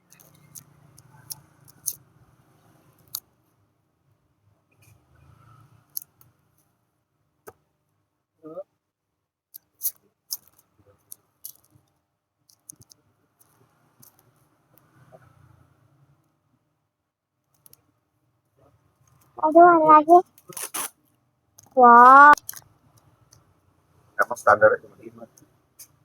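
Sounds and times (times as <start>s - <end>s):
paper rustling: 20.4s - 20.9s.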